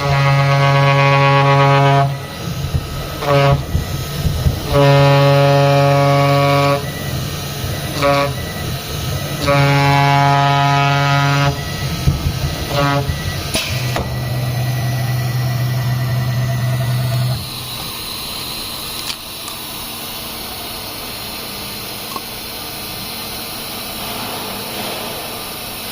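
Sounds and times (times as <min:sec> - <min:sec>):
buzzing horn blasts: 0:00.0 - 0:18.8
low machine hum: 0:00.0 - 0:25.9
steady running noise: 0:00.0 - 0:25.9.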